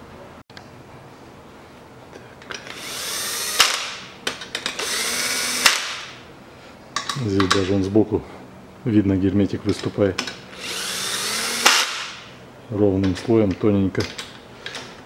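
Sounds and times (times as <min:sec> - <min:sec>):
power screwdriver whirring: 0:04.7 - 0:06.0, 0:10.6 - 0:12.1.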